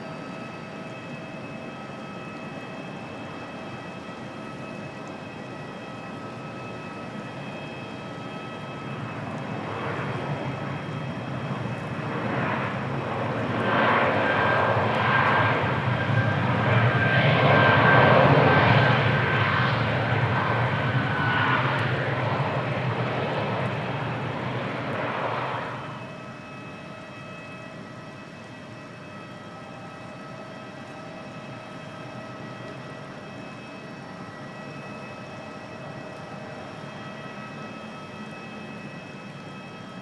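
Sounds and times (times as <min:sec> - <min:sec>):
jet engines passing: 0:06.2 - 0:26.9.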